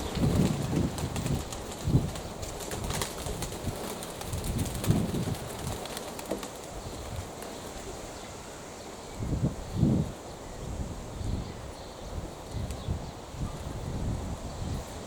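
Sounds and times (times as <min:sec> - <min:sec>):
wind on microphone: 0:00.0 - 0:05.9, 0:09.1 - 0:15.0.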